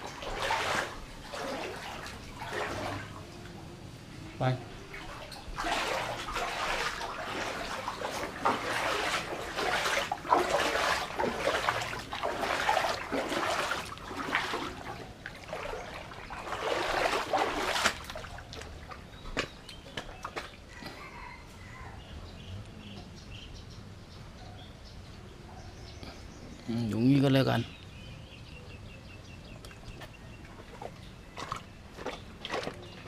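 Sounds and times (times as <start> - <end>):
floodwater splashing and sloshing: 0.0 - 21.0, 29.6 - 33.0.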